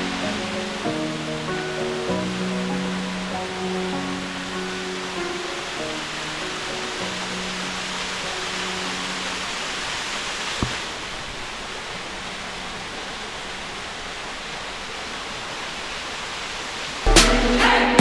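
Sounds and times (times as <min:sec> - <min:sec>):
waterfall rushing: 0:00.0 - 0:18.0
loud music: 0:17.1 - 0:18.0.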